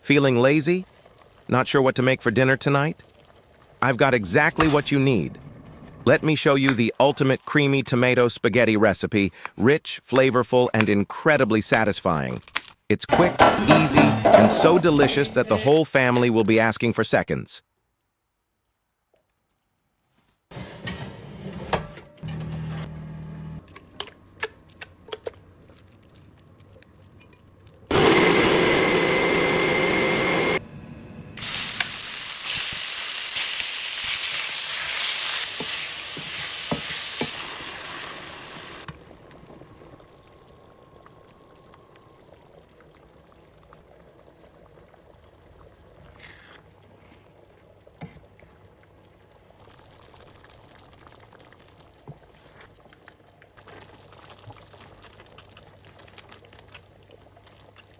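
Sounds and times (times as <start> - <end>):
food sizzling in a hot pan: 31.4 - 38.9.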